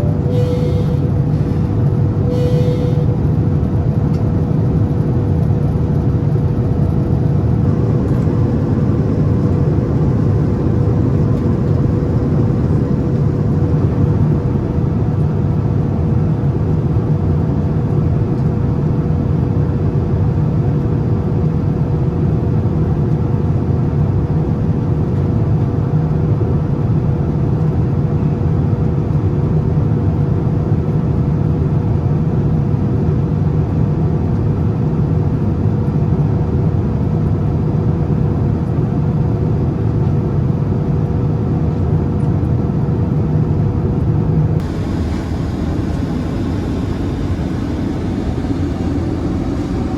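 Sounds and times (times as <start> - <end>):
airliner cabin rush: 0.0 - 17.0, 44.6 - 49.9
faint steady hum: 7.3 - 15.7, 44.6 - 49.9.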